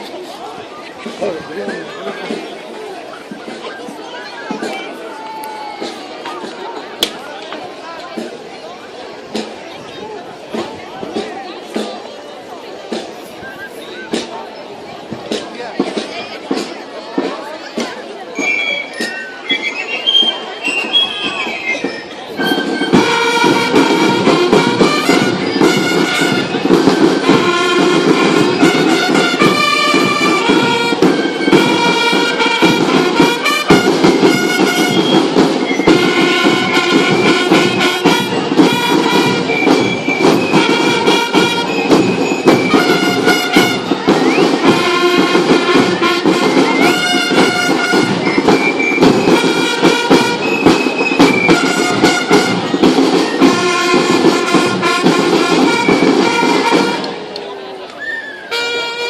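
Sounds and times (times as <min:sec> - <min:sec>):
continuous even drumming: 0:00.0 - 0:59.0
brass or wind instruments: 0:18.3 - 0:57.4, 0:58.0 - 0:59.0.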